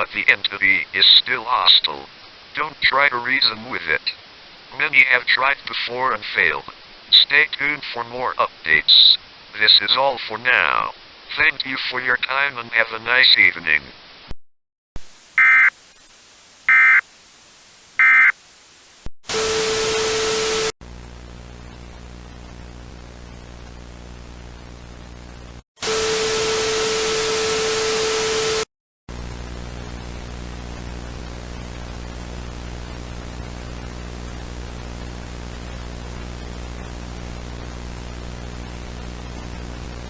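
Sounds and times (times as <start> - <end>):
loud static with steady tone: 0.0 - 11.7, 12.6 - 14.3, 15.0 - 40.0
static and hum: 15.0 - 27.4, 28.0 - 40.0
data-tone bursts: 15.3 - 15.9, 16.7 - 17.1, 18.0 - 18.4.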